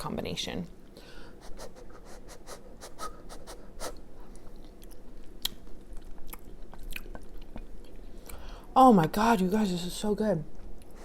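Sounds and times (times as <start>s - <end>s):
person chewing food: 3.3s - 8.4s.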